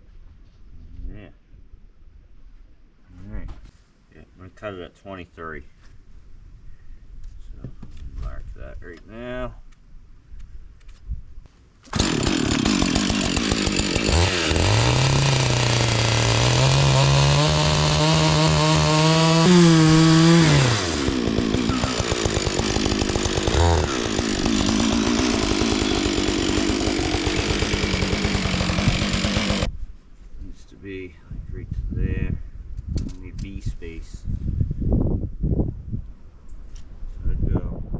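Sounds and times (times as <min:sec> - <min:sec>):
chainsaw cutting a log: 0:11.9 - 0:29.7.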